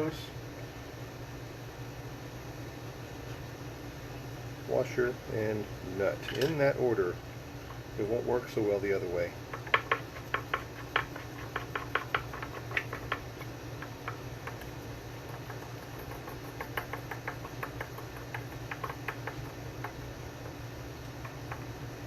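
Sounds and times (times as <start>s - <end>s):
faint steady hum: 0.0s - 22.0s
nut threading clicks: 9.5s - 20.6s, 21.2s - 21.8s.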